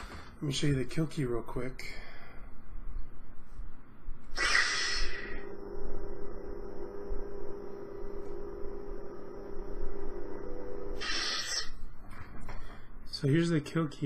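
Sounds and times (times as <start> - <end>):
lightsaber electronic hum: 3.0 - 12.1
lightsaber ignition whoosh: 4.4 - 5.5, 11.0 - 11.7.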